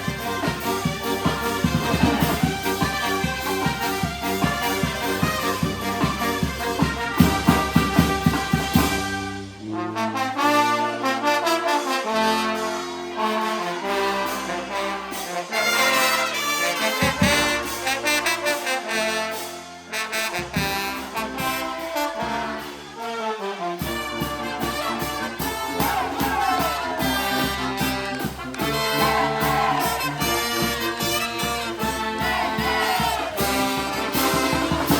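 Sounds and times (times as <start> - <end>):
drum beat: 0.0 - 9.2, 16.8 - 18.2, 23.9 - 34.9
brass band playing: 0.0 - 34.9.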